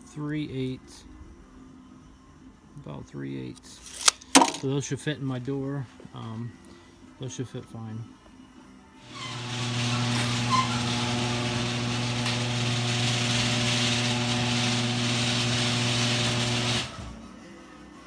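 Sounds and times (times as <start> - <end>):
electric power tool running: 9.0 - 17.3.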